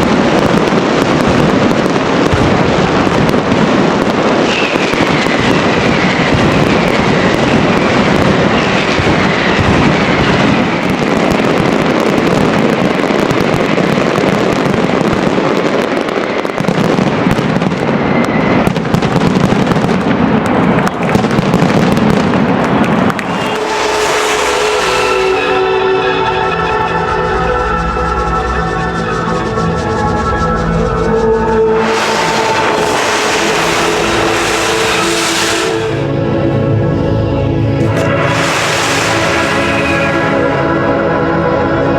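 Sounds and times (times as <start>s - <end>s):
falling firework whistles: 0.0s - 19.7s, 21.2s - 36.1s, 37.9s - 40.9s
fireworks bangs and crackle: 0.0s - 36.3s, 37.8s - 41.0s.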